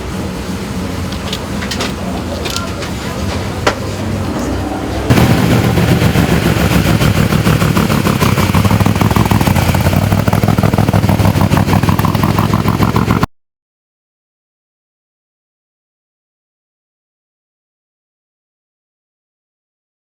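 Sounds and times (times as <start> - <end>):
loud engine with rattling exhaust: 0.0 - 13.3.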